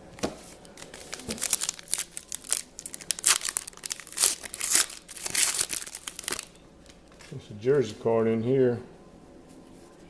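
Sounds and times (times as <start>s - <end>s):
foil wrapper crinkling and tearing: 0.6s - 7.2s.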